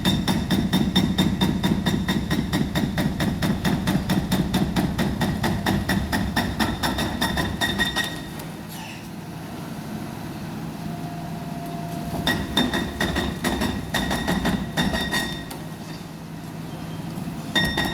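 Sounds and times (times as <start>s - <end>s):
hydraulic breaker hammering concrete: 0.0s - 8.4s, 12.2s - 15.7s, 17.5s - 17.9s.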